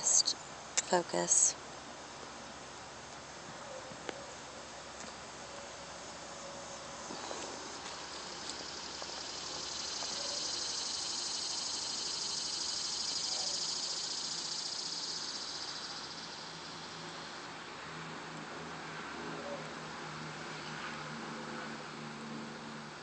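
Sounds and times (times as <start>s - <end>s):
high-pitched insect buzzing: 0.0s - 0.4s, 7.1s - 17.4s.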